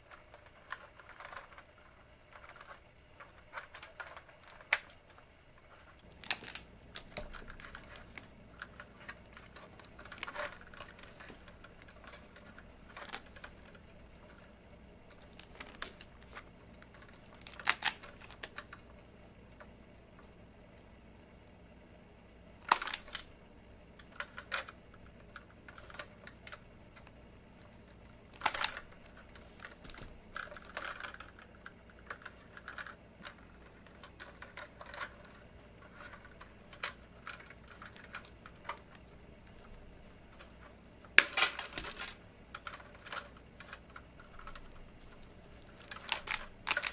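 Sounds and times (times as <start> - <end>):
faint steady low hum: 0.0 - 46.9
clicks and knocks of metal parts: 24.0 - 46.9.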